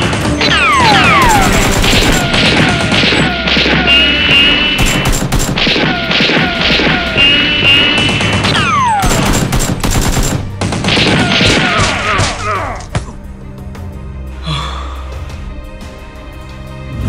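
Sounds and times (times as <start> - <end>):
rapid gunfire: 0.0 - 12.4
action music: 0.0 - 17.0.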